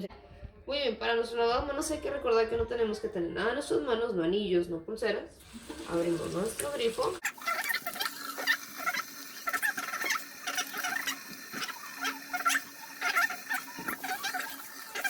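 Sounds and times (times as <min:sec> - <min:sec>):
running tap water: 0:05.4 - 0:15.0
soapy hands squelching: 0:07.2 - 0:15.0.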